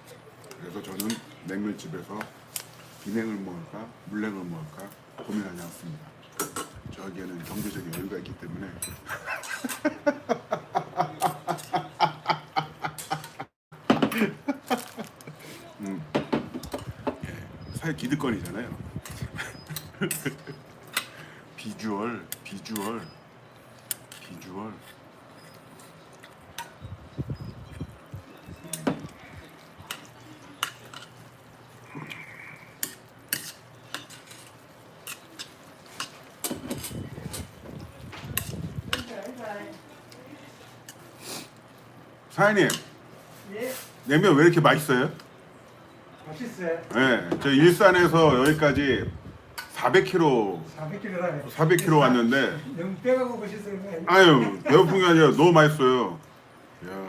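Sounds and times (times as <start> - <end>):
utensils clinking against bowl: 0.0 - 1.4, 6.2 - 6.8, 8.8 - 9.9, 12.8 - 13.4, 18.4 - 21.2, 22.3 - 26.9, 27.6 - 41.1, 42.5 - 43.0, 51.6 - 52.2
man laughing: 9.1 - 13.5, 14.1 - 15.5, 19.2 - 20.6, 54.3 - 55.1
eating noise: 23.7 - 39.0.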